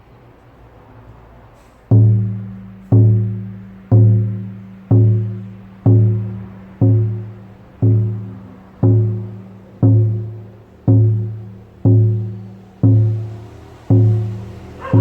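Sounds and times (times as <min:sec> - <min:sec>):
frame drum beating slowly: 0:01.9 - 0:15.0.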